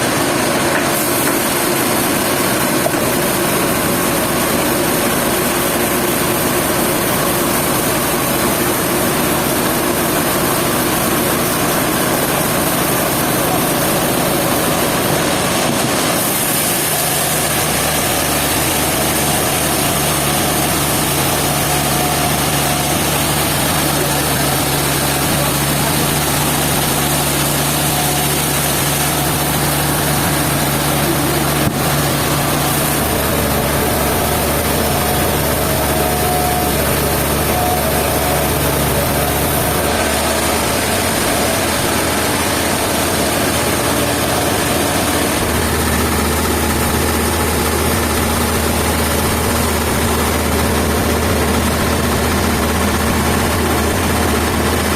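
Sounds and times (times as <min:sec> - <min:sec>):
sawmill machinery running: 0:00.0 - 0:54.9.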